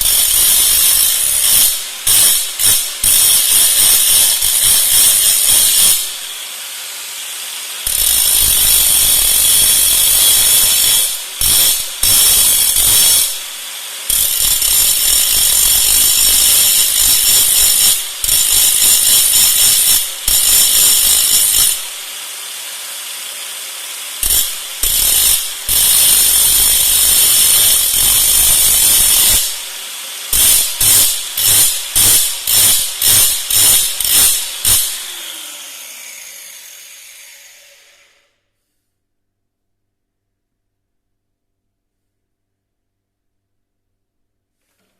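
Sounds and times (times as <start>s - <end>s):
electric power tool running: 21.6s - 38.3s.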